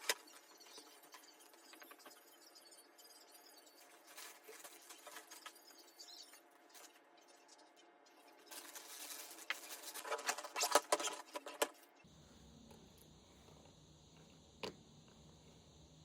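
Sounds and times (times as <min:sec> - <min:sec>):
rustling and scratching: 0:03.8 - 0:07.0, 0:08.4 - 0:11.8.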